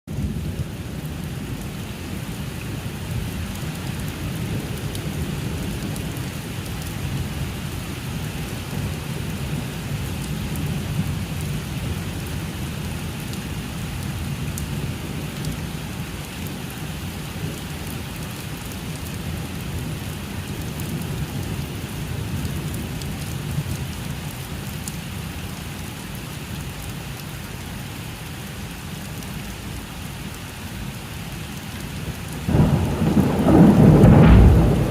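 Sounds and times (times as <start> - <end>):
heavy rain falling: 0.1 - 34.9
low rumble of thunder: 32.3 - 34.9.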